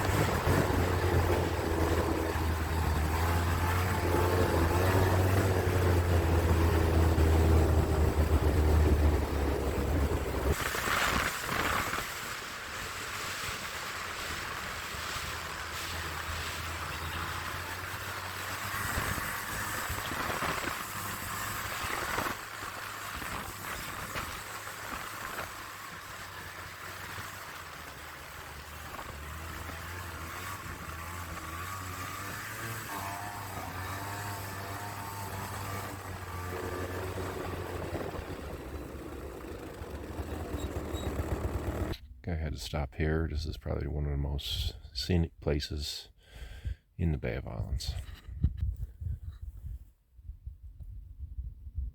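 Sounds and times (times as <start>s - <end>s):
wind and snow hiss: 0.0s - 40.6s
snowmobile engine running: 0.0s - 42.0s.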